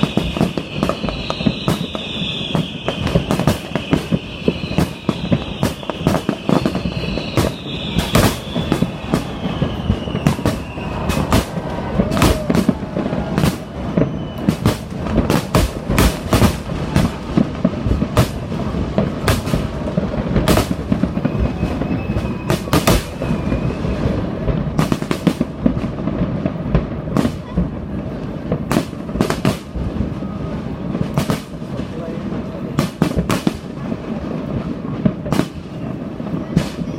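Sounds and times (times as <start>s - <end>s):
high falling whistle: 0.0s - 14.7s, 21.2s - 24.2s
fireworks bangs and crackles: 0.0s - 36.9s.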